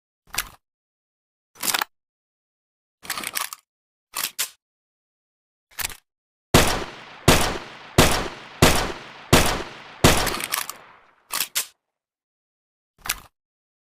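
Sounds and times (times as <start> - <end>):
pistol shots echoing: 6.6 - 11.1
short sharp clicks: 6.6 - 11.7.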